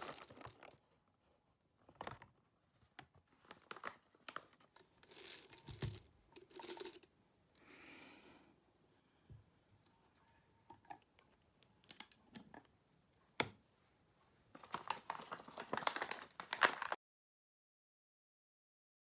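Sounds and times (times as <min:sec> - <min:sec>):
crinkling and rustling: 0:00.0 - 0:00.8, 0:01.8 - 0:07.0, 0:14.5 - 0:17.0.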